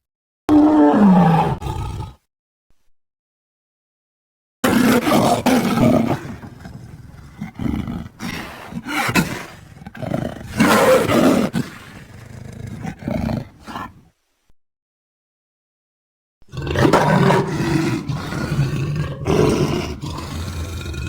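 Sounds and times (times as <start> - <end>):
monster roars: 16.5 - 21.0.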